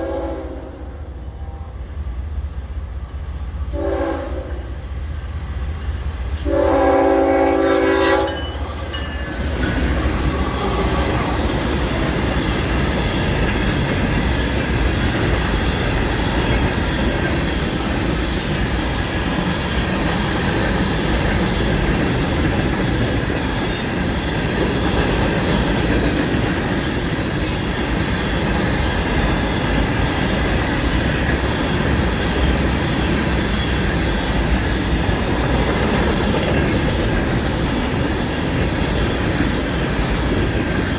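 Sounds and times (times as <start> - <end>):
train horn blast: 0.0 - 1.8, 3.7 - 4.7, 6.4 - 8.6
steel wheels rushing on rail: 0.0 - 40.9
clickety-clack over rail joints: 6.2 - 40.9.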